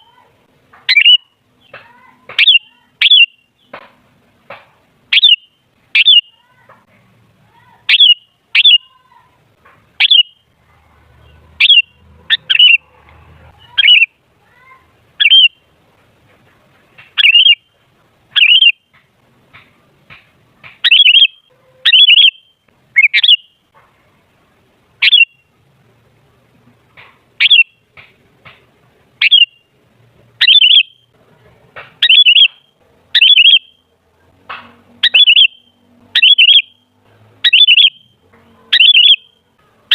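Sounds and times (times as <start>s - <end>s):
bulbul short sharp calls: 0.8s - 3.8s, 5.1s - 6.7s, 7.6s - 9.1s, 9.9s - 10.6s, 11.2s - 14.2s, 15.2s - 15.6s, 17.0s - 18.9s, 20.8s - 23.6s, 25.0s - 25.5s, 27.4s - 28.2s, 29.2s - 29.7s, 30.4s - 31.1s, 31.9s - 33.9s, 34.6s - 39.4s.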